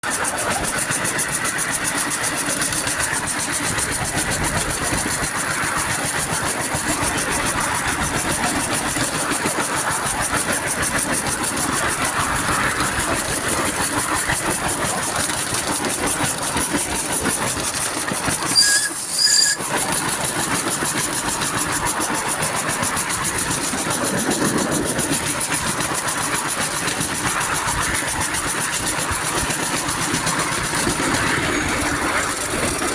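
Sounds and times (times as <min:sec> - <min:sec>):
steam locomotive chuffing: 0:00.0 - 0:32.9
high-pitched whistle toots: 0:18.5 - 0:19.6.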